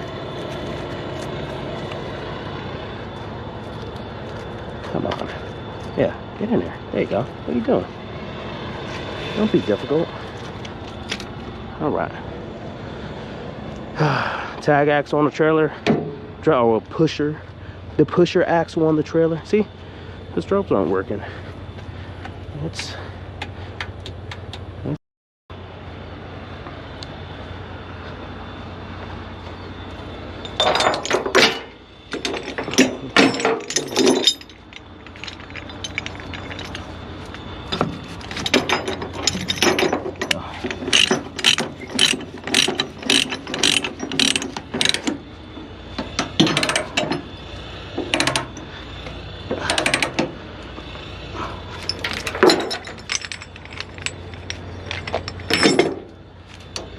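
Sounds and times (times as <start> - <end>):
steady low hum: 0.0 - 56.9
ratchet clicking: 38.4 - 45.2.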